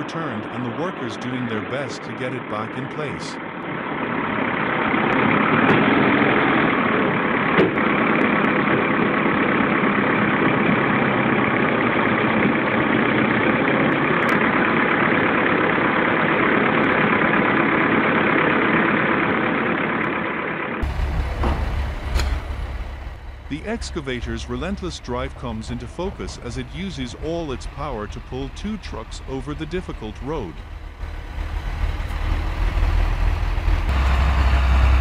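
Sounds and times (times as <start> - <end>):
heavy vehicle engine running: 0.0 - 35.0
engine deep low rumble: 20.7 - 35.0.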